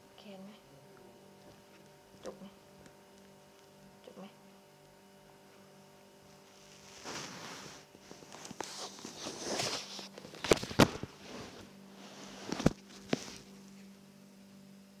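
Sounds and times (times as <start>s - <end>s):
faint steady hum: 0.0s - 15.0s
rustling: 5.6s - 14.0s.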